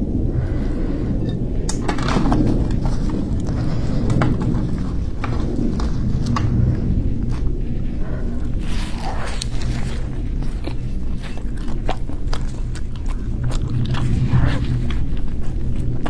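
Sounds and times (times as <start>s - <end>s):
close eating and handling noises: 0.0s - 16.0s
steady low rumble: 0.0s - 16.0s.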